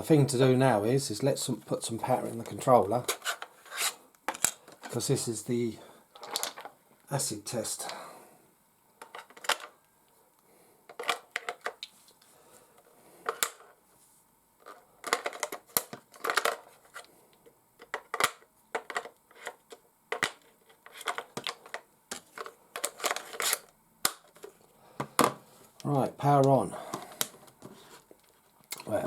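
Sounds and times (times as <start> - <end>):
plastic clicks and rattles: 10.9 - 11.9.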